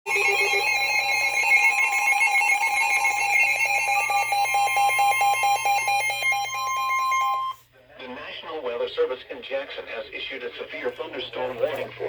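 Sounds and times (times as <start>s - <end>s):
rapid electronic alarm beeping: 0.1s - 7.6s
steady high tone: 0.1s - 7.6s.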